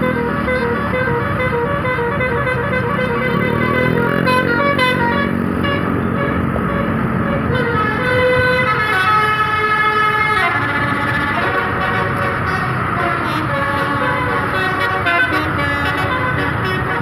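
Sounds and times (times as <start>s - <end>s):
engine running: 0.0s - 17.0s
musical bus horn melody: 0.0s - 17.0s.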